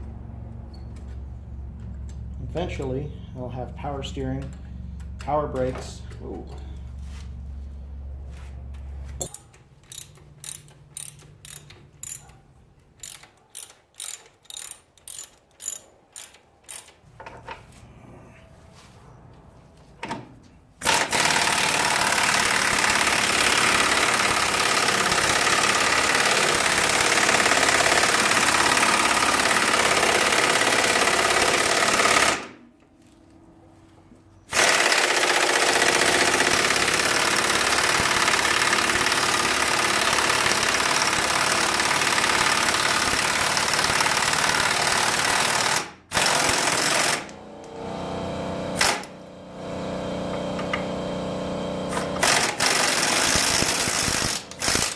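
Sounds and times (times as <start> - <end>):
loud power tool running: 20.8 - 32.5, 34.5 - 54.9.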